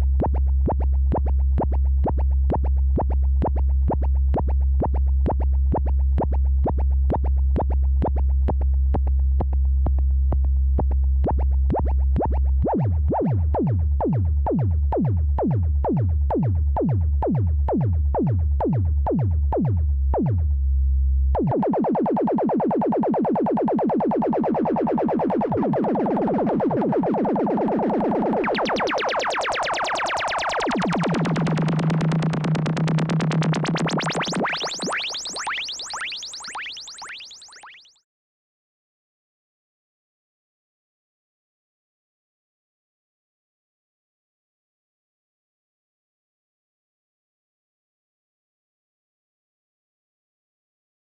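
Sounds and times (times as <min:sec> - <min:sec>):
buzzy sustained synth tone: 0:33.7 - 0:37.7.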